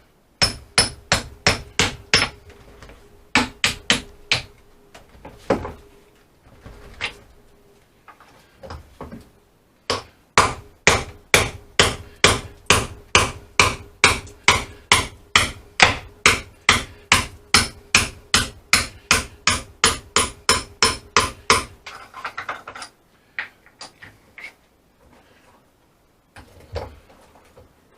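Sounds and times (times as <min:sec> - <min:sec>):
hammer striking: 0:00.4 - 0:02.4, 0:03.3 - 0:04.5, 0:09.9 - 0:21.8.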